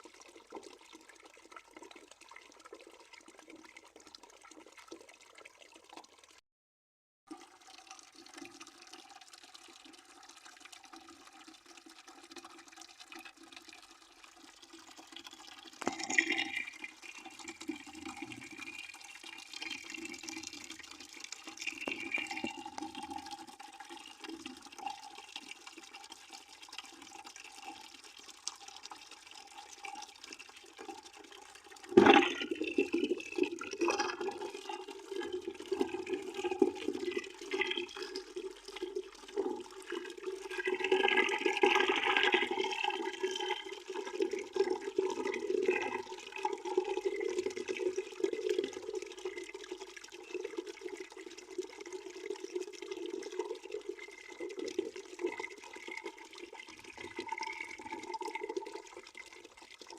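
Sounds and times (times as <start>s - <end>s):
water pouring into a bucket: 0.0s - 6.4s, 7.3s - 59.9s.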